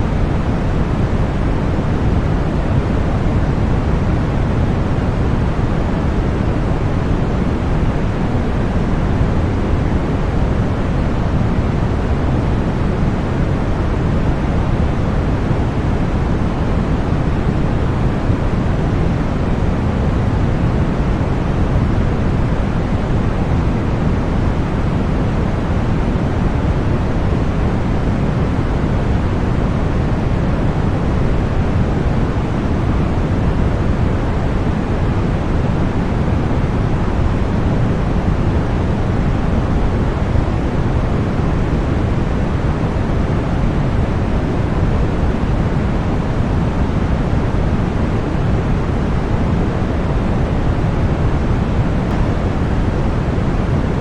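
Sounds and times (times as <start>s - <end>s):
deep white noise: 0.0s - 54.0s.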